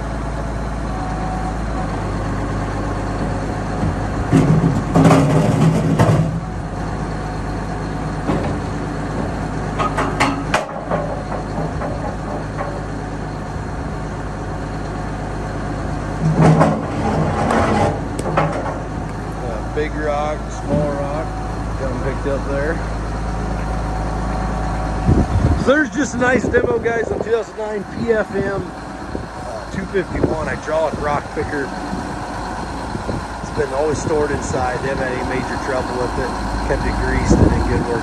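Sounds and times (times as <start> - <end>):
tractor engine running: 0.0 - 38.0
sharp knocks: 3.8 - 6.4, 9.2 - 12.9
rocks clattering against steel hopper: 4.3 - 6.4.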